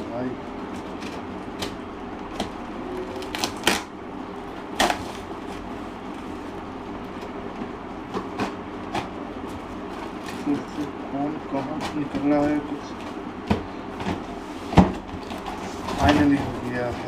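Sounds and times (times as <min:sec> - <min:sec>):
background hum: 0:00.0 - 0:17.0
plastic and cardboard crackling: 0:00.7 - 0:03.9.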